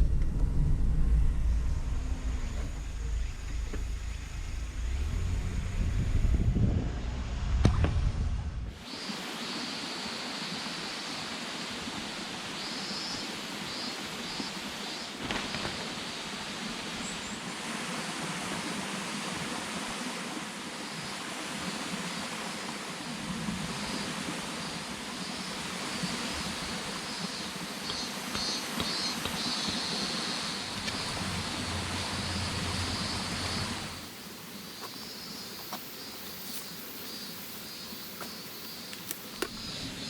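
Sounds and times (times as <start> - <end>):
flowing water rushing: 8.7 - 40.0.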